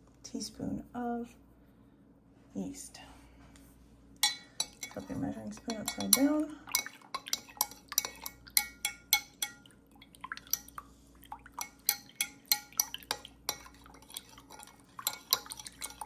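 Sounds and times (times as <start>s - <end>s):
metal spoon clinking on container: 4.2s - 9.7s, 10.5s - 10.8s, 11.6s - 16.0s.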